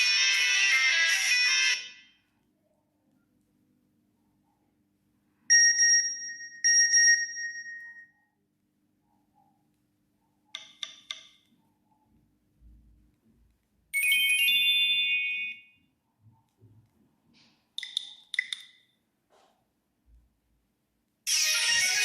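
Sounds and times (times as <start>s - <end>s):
bright phone chime: 14.0s - 15.8s.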